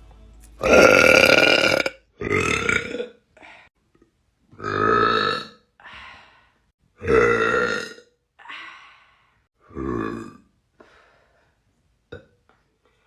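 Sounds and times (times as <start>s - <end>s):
person burping: 0.6s - 3.2s, 4.5s - 5.7s, 7.0s - 8.2s, 9.6s - 10.5s, 12.1s - 12.4s.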